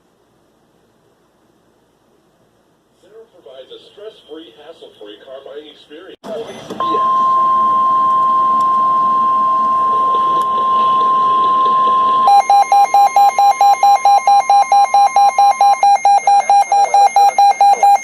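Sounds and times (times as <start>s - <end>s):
electronic alarm beeping: 6.5s - 18.0s
steady alert tone: 6.8s - 18.0s.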